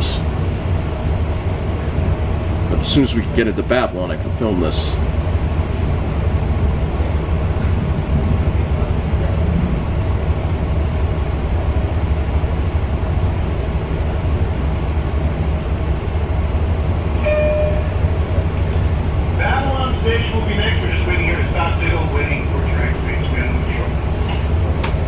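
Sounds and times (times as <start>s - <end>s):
train car rumble: 0.0s - 25.0s
brief pitched tone: 17.2s - 18.1s.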